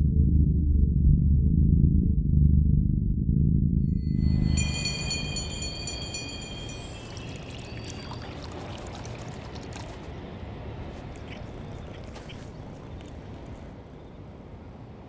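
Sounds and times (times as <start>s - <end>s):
trickling water hiss: 4.4s - 13.7s.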